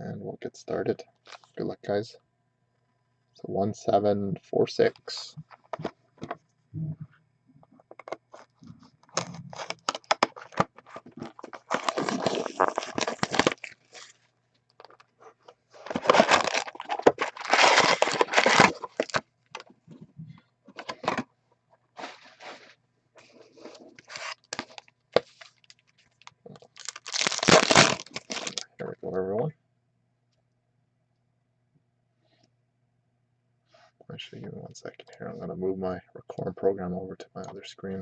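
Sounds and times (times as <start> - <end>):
shrink wrap crinkling and tearing: 8.3 - 19.6, 23.9 - 28.8.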